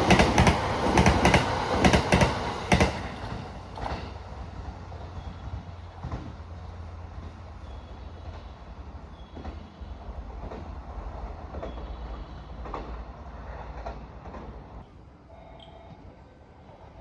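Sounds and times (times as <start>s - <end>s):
wheels clacking over rail joints: 0.0s - 4.7s
train rumbling: 0.0s - 14.9s.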